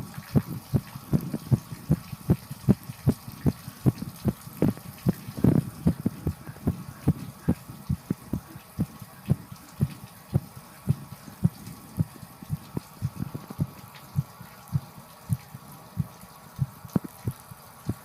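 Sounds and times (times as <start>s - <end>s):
shower water hiss: 0.0s - 18.0s
heartbeat thuds: 0.3s - 18.0s.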